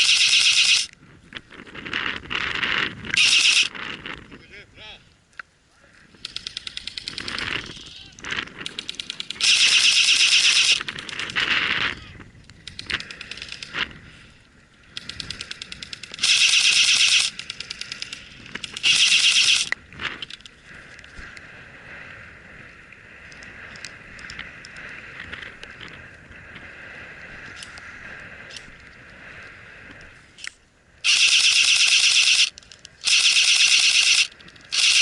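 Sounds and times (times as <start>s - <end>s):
airsoft guns firing bursts: 0.0s - 0.9s, 3.2s - 3.7s, 8.7s - 11.3s, 15.9s - 19.7s, 31.1s - 35.0s.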